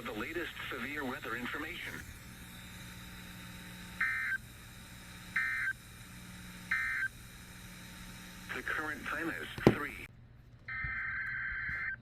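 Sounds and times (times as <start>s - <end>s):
short digital data bursts: 3.8s - 9.0s.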